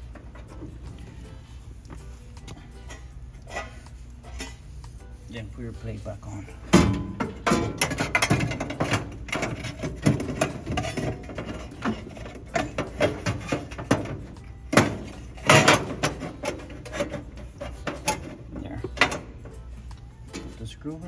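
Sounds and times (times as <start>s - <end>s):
metal scraping on metal: 2.8s - 21.0s
metal knocks: 6.6s - 19.4s.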